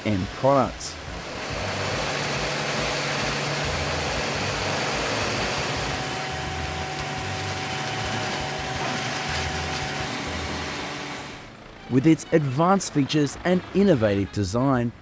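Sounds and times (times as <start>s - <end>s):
diesel engine droning: 0.0s - 15.0s.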